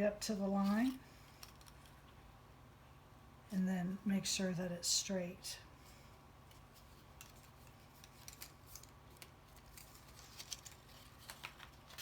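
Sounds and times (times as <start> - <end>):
low steady hum: 0.0 - 12.0
card stock clicks and rustles: 0.7 - 2.0, 6.5 - 12.0.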